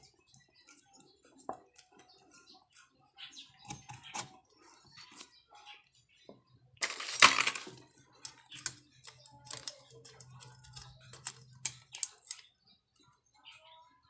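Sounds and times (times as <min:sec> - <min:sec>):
metal parts clattering: 0:06.8 - 0:07.8
small sharp clicks and taps: 0:07.6 - 0:12.5.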